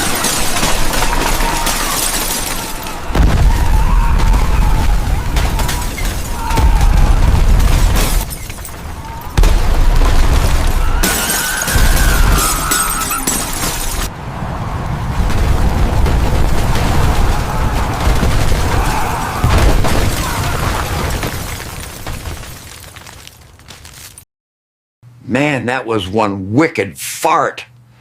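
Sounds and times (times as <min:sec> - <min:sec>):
crashes and shattering: 0:00.0 - 0:14.1, 0:15.1 - 0:24.2
deep rumbling: 0:03.0 - 0:11.1.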